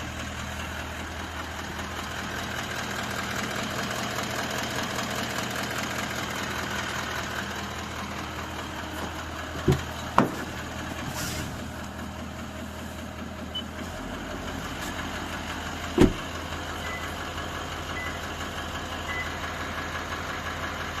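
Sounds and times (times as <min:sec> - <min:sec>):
diesel engine idling: 0:00.0 - 0:21.0
engine knocks: 0:00.0 - 0:21.0.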